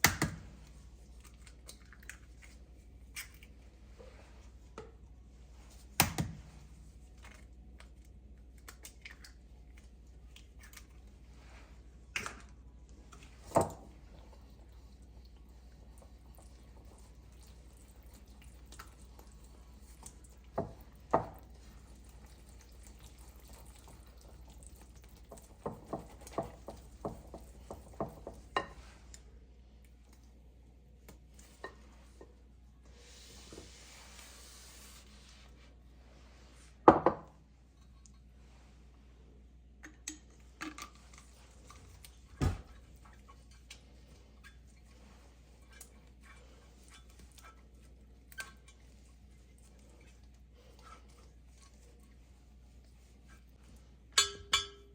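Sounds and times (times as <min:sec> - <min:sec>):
dishes and utensils clinking: 0:54.1 - 0:54.9.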